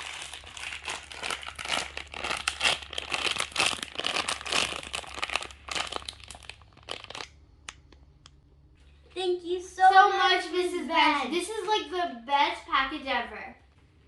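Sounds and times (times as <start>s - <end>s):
packaging crinkling: 0.0s - 7.4s.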